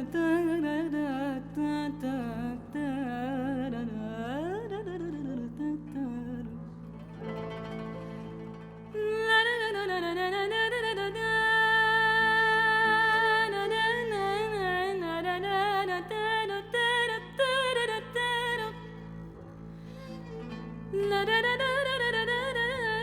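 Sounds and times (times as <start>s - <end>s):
violin melody: 6.4s - 23.0s.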